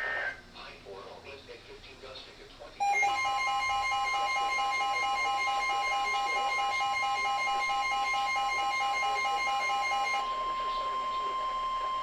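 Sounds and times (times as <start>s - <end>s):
two-tone alarm tone: 2.8s - 12.0s.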